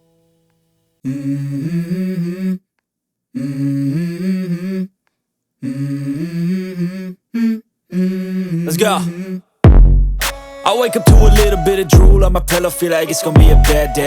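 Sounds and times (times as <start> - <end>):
wordless vocal music: 1.0 - 2.7, 3.4 - 5.0, 5.6 - 9.5, 10.2 - 14.0.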